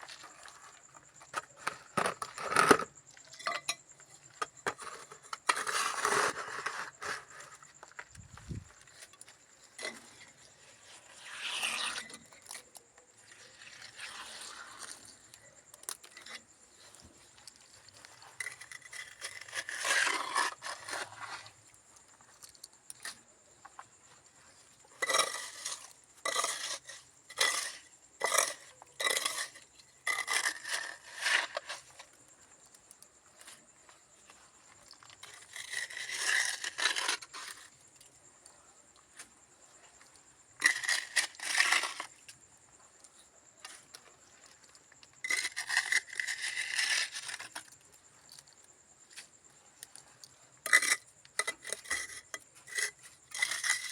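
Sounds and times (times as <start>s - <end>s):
trowel scraping mortar on bricks: 0.0s - 21.6s, 24.7s - 32.2s, 33.4s - 37.8s, 40.5s - 42.4s, 45.2s - 47.8s, 50.6s - 53.9s.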